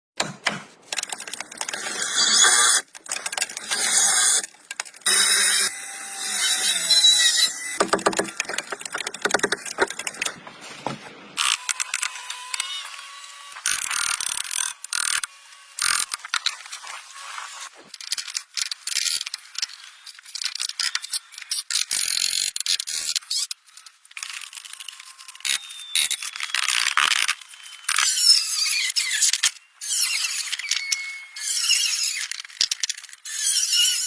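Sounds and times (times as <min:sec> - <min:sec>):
clicking and knocking: 0:07.8 - 0:11.0.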